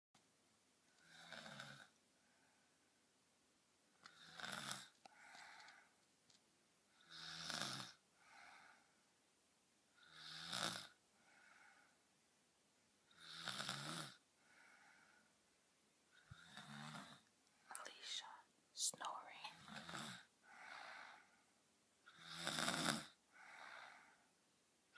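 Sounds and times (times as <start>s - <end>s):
quiet breath: 0.8s - 3.2s, 3.9s - 9.3s, 9.9s - 12.4s, 13.0s - 24.6s
girl snoring: 1.0s - 1.9s, 4.0s - 5.8s, 6.9s - 8.9s, 10.0s - 11.9s, 13.1s - 15.2s, 16.2s - 18.2s, 18.8s - 21.3s, 22.0s - 24.3s.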